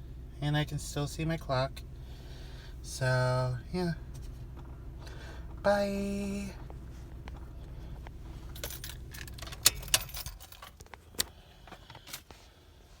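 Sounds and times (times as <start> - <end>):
low steady rumble: 0.0 - 13.0
light metallic rattles: 7.3 - 12.3.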